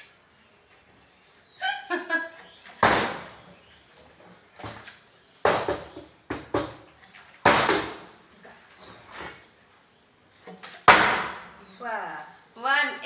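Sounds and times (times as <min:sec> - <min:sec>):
sharp knocks and clatters: 0:02.6 - 0:09.4, 0:10.4 - 0:11.6.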